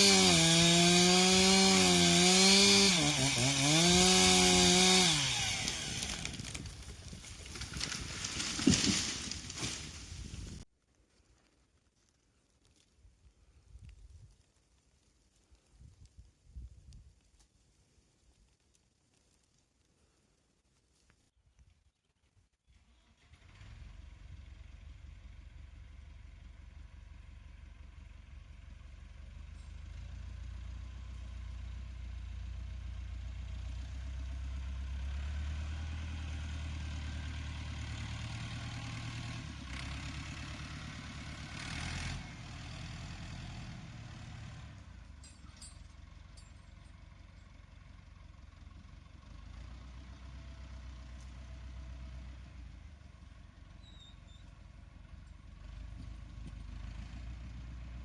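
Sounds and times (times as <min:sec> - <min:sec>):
tractor diesel engine running: 0:23.1 - 0:58.0.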